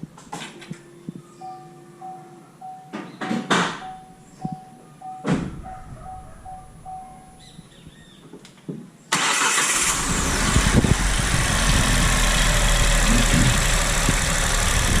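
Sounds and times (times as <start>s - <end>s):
car engine cold-starting: 9.1s - 15.0s.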